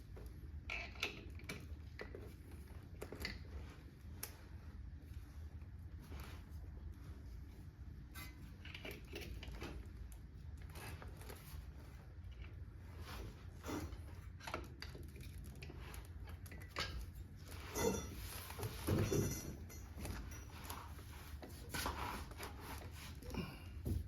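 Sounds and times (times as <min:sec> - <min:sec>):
hand tools and metal clinking: 0:13.5 - 0:24.0.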